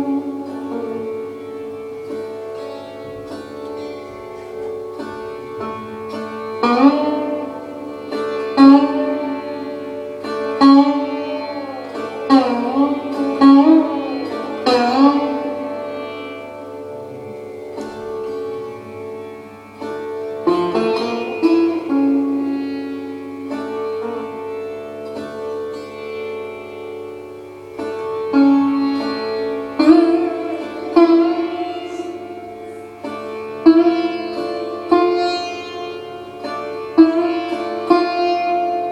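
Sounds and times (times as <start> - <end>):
sitar plucked notes: 0.0 - 38.9.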